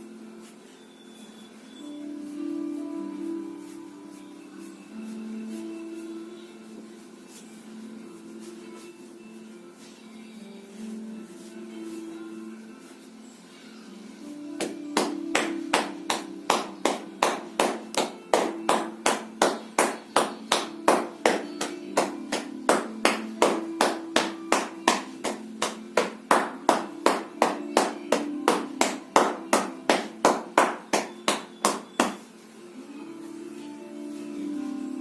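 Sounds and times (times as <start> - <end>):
hands slapping on body: 14.6 - 32.3.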